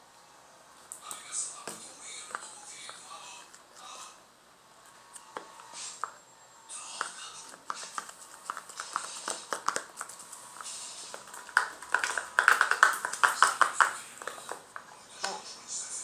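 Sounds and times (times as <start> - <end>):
slime clicking and popping: 11.2 - 14.4.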